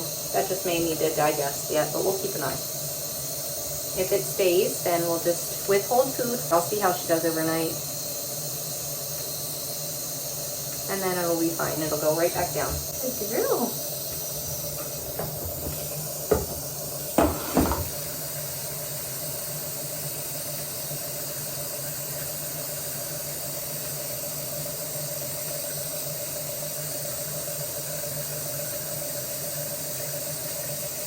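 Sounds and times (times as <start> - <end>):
blow dryer running: 0.0 - 31.0
sharp knocks: 14.8 - 17.9.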